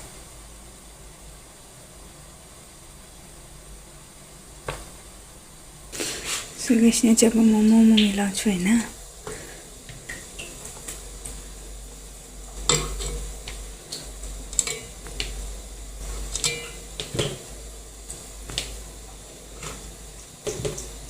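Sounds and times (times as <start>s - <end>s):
steady low hum: 0.0s - 21.0s
dishes and utensils clinking: 12.6s - 13.3s, 14.6s - 15.0s, 16.3s - 17.5s.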